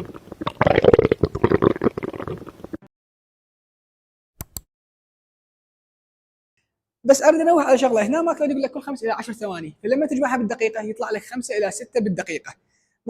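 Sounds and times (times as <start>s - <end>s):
bowel gurgling: 0.0s - 2.9s.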